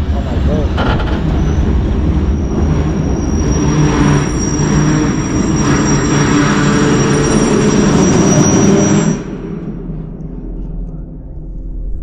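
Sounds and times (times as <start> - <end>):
freight train wagons rumbling: 0.0 - 12.0
thin high whine: 1.3 - 12.0.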